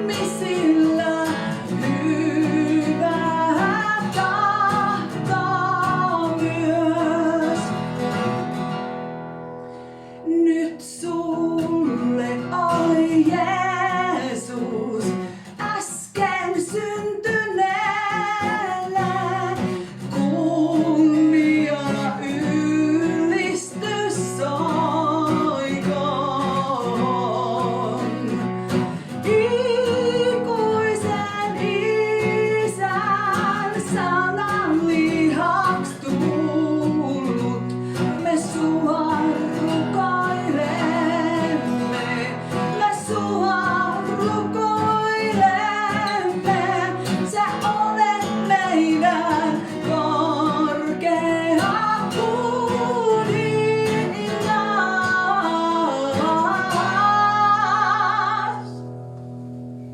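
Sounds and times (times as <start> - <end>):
woman singing with vibrato: 0.0 - 8.3, 10.2 - 59.0.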